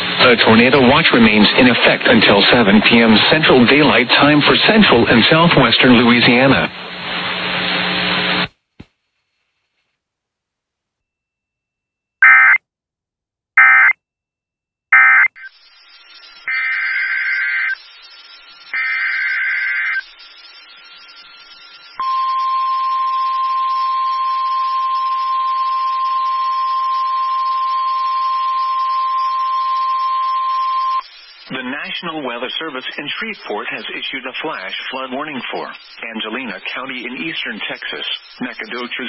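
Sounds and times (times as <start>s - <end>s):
faint radio static: 0.0s - 8.5s, 15.0s - 39.0s
steady single-pitch alarm tone: 12.2s - 12.6s, 13.6s - 13.9s, 15.0s - 15.4s, 22.0s - 31.0s.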